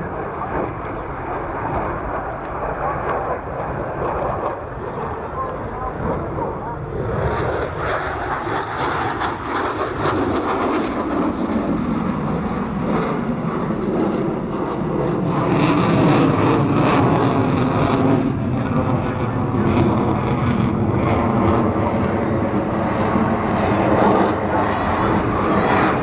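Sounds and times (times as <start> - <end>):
jet engine rumble: 0.0 - 26.0.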